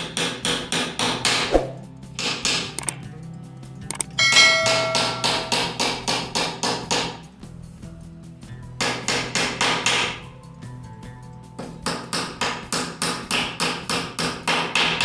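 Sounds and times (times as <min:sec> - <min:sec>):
hammer striking nails: 0:00.0 - 0:01.6, 0:02.2 - 0:02.9, 0:03.9 - 0:07.2, 0:08.8 - 0:10.2, 0:11.6 - 0:15.0
brief metallic ring: 0:04.2 - 0:05.5.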